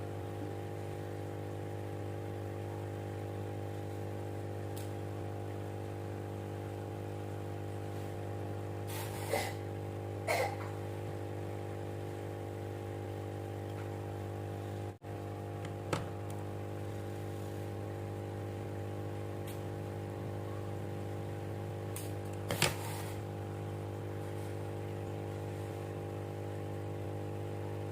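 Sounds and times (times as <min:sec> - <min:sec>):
electric pump motor humming: 0:00.0 - 0:27.9.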